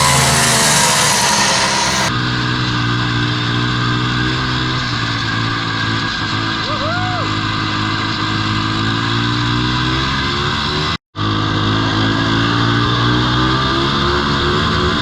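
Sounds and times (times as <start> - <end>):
snowmobile engine running: 0.0 - 2.1, 11.2 - 15.0.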